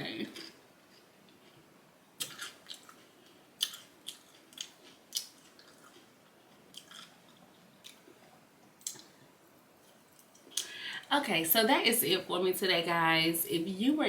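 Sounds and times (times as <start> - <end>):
cucumber being bitten and chewed: 2.2 - 3.0, 3.6 - 8.1.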